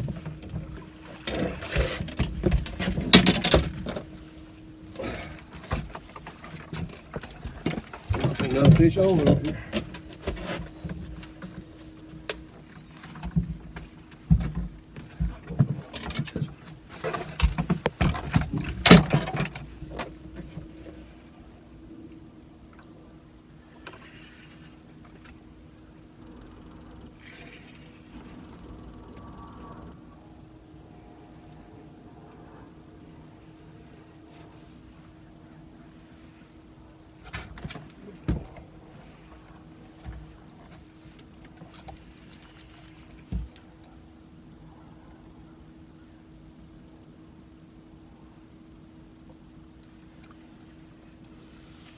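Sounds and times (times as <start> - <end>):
knocks and rattles on a boat: 0.0 - 21.2
faint steady hum: 0.0 - 51.9.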